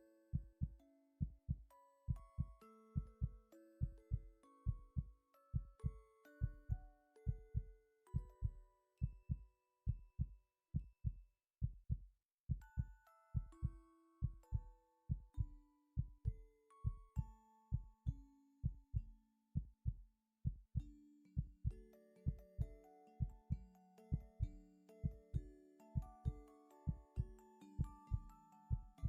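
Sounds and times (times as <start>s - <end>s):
soft chime-like background music: 0.0s - 10.9s, 12.6s - 19.3s, 20.8s - 29.0s
heartbeat thumps: 8.2s - 12.8s.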